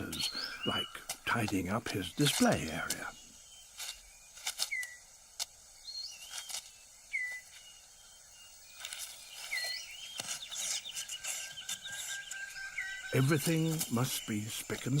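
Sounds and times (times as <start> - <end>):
leaves and twigs crackling: 0.0 - 15.0
falling bird whistle: 5.9 - 7.7.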